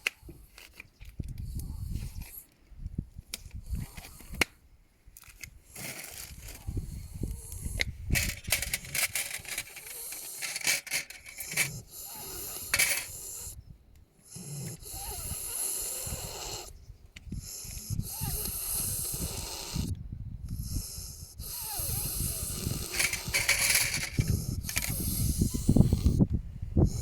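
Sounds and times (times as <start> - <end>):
donkey snoring: 5.8 - 13.6, 14.2 - 16.8, 17.4 - 27.0.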